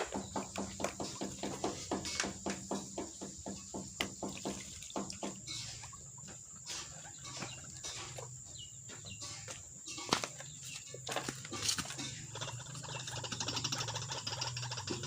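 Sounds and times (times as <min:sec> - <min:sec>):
bird calling: 0:00.0 - 0:15.0.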